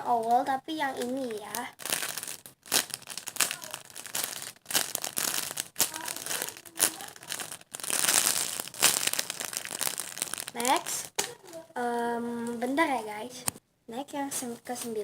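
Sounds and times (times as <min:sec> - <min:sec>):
plastic toy crinkling and rustling: 0:00.1 - 0:11.8.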